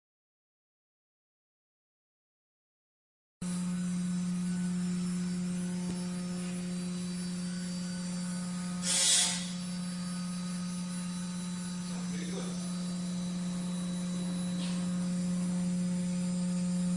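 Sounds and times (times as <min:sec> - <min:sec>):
machinery electrical hum: 0:03.4 - 0:16.9
air blast hiss: 0:08.8 - 0:09.6.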